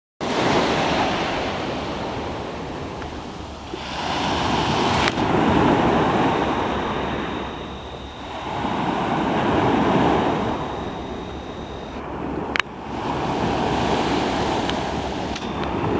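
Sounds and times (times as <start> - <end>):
sea surf washing on shore: 0.2 - 5.9
faint high whine: 2.9 - 15.9.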